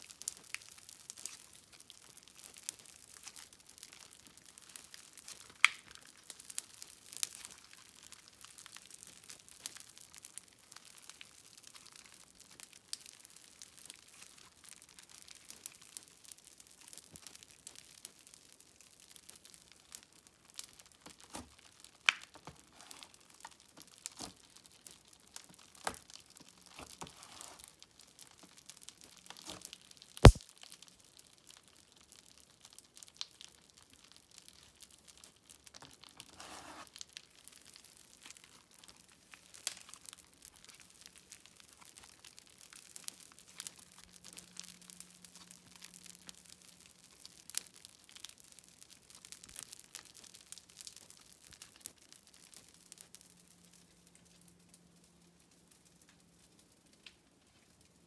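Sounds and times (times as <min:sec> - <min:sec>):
slime squishing with crackles: 0:00.0 - 0:18.3, 0:29.4 - 0:30.4, 0:34.5 - 0:57.9.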